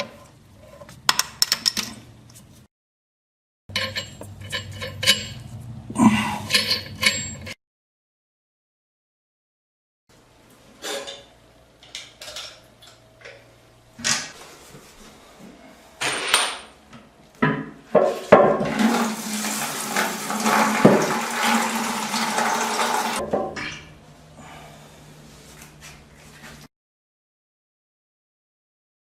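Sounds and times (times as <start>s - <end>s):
toilet flushing: 18.5s - 23.8s.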